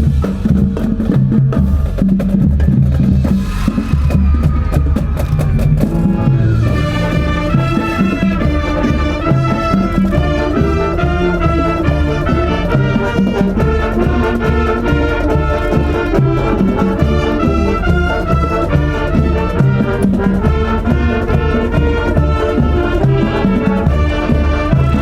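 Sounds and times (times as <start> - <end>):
steady drum beat: 0.0 - 25.0
brass section playing tune: 5.4 - 25.0.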